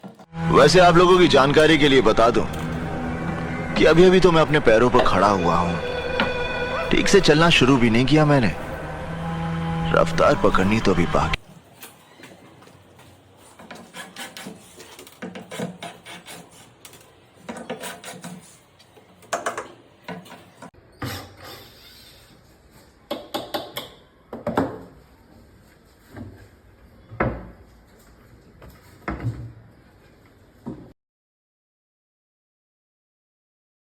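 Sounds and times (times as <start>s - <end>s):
hand tool scraping wood: 13.0s - 18.7s.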